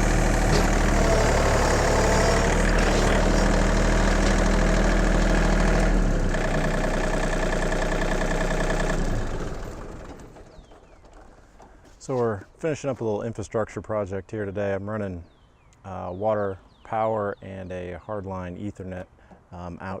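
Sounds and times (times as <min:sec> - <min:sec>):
tractor diesel engine running: 0:00.0 - 0:12.8.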